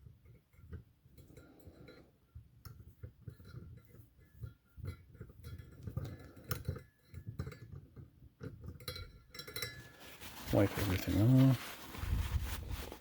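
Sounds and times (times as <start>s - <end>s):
small clicks and light knocks: 0.0s - 9.8s.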